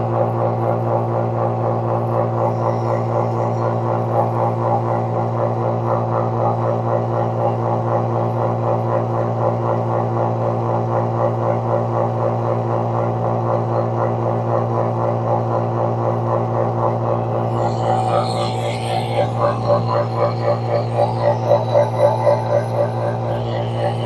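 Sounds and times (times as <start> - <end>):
vacuum pump humming and pulsing: 0.0 - 24.0.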